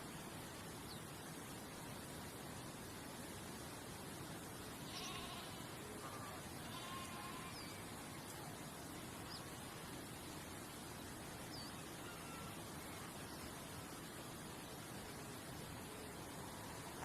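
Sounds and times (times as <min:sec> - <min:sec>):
outdoor ambience hiss: 0:00.0 - 0:17.0
faint wavering animal calls: 0:04.8 - 0:08.6, 0:11.6 - 0:14.1.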